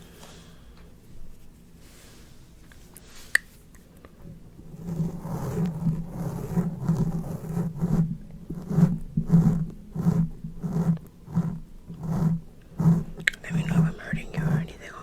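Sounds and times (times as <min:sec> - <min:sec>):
rasping mouth sounds: 0:04.9 - 0:15.0.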